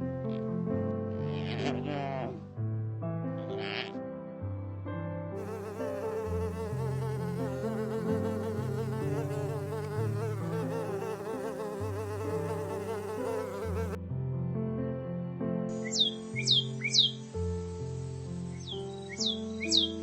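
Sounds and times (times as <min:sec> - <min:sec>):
background music: 0:00.1 - 0:14.0, 0:15.5 - 0:20.0
flying insect buzzing: 0:05.4 - 0:14.0.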